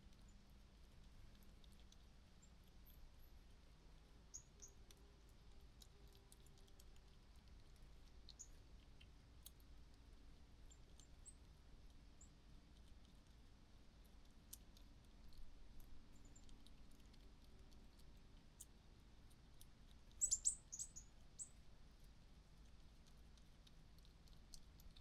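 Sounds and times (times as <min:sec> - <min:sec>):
small bird chirping: 0:04.2 - 0:05.0, 0:08.3 - 0:09.0, 0:10.6 - 0:11.5, 0:16.0 - 0:17.2, 0:19.9 - 0:21.7.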